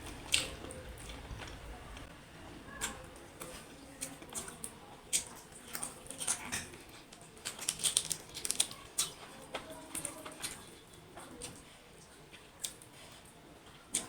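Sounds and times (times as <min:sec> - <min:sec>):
wet chewing clicks and smacks: 0:00.0 - 0:02.1, 0:02.8 - 0:14.0.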